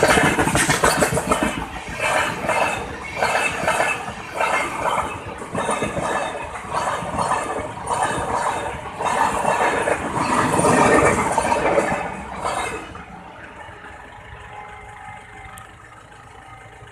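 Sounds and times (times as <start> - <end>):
train wheels clattering over rails: 0.0 - 14.5
steady train hum: 0.0 - 16.9.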